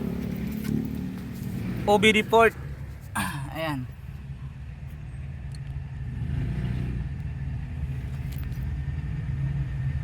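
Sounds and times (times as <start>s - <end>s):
car engine idling: 6.9s - 10.0s.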